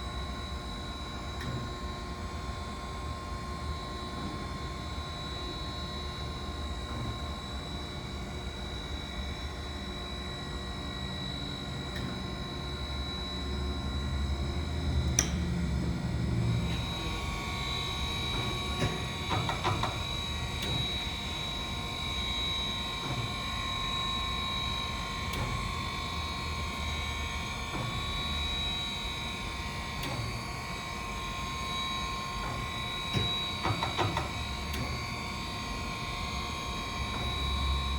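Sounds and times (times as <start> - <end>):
surface grinder humming and whining: 12.2 - 37.9.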